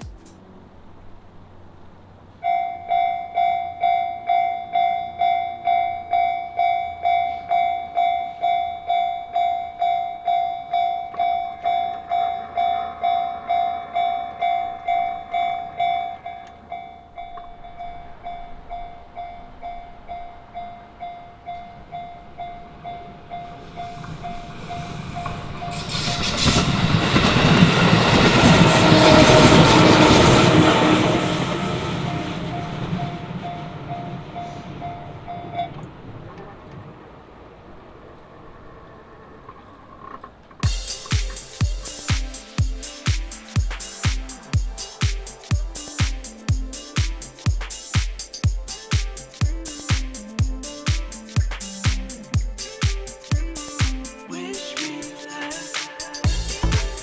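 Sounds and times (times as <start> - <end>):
train wheels on rails: 0.0 - 54.0
level crossing electronic bell: 2.5 - 29.4, 30.1 - 35.8.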